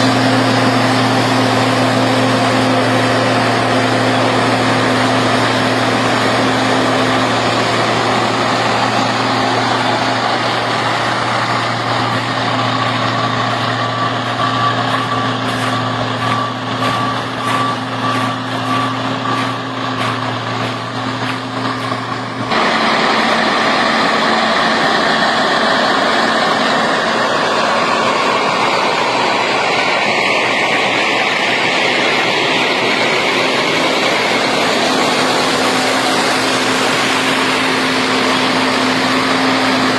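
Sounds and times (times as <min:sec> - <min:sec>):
heavy machinery diesel engines: 0:00.0 - 0:39.9
high repeating beep: 0:12.5 - 0:22.0.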